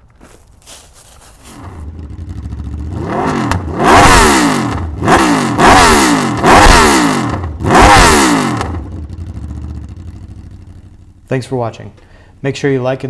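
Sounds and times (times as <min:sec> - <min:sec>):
motorcycle accelerating through gears: 0:01.5 - 0:11.0.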